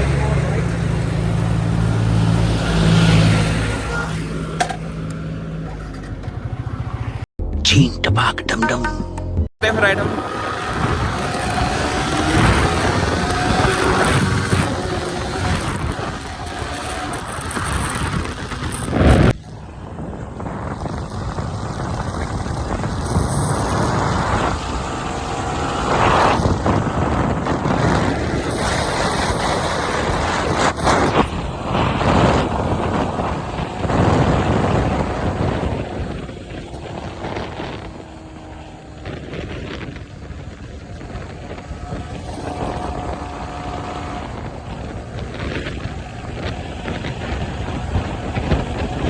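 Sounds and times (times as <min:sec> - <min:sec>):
motorcycle engine accelerating: 0:00.0 - 0:07.6, 0:09.4 - 0:49.0
wind noise on microphone: 0:09.6 - 0:49.0.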